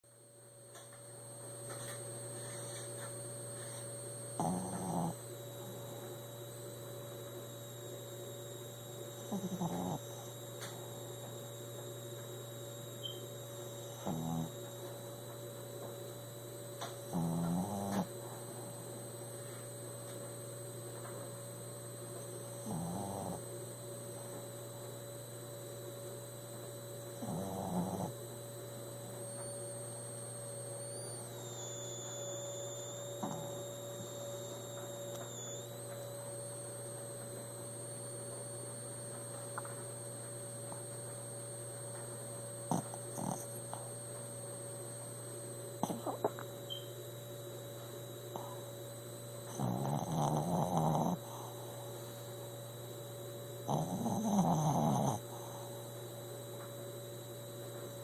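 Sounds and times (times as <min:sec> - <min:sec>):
low electrical hum: 0:00.1 - 0:58.0
dog snoring: 0:01.8 - 0:06.2, 0:09.2 - 0:11.3, 0:12.6 - 0:15.1, 0:16.8 - 0:18.9, 0:22.4 - 0:23.6, 0:27.1 - 0:28.4, 0:30.8 - 0:35.7, 0:42.6 - 0:44.0, 0:45.8 - 0:46.8, 0:48.2 - 0:48.8, 0:49.4 - 0:52.3, 0:53.5 - 0:56.1.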